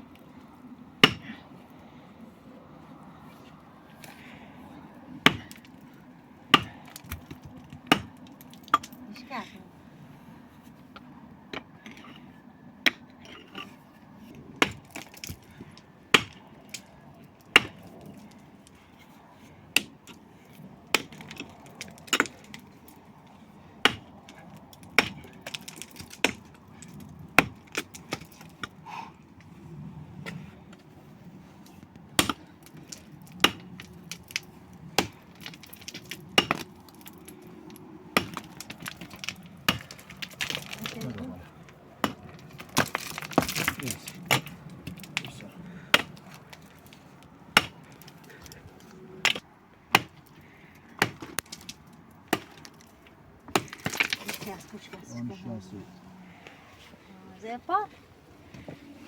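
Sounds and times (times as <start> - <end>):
sharp irregular knocks: 6.5 - 9.0, 31.7 - 41.3, 49.2 - 54.7.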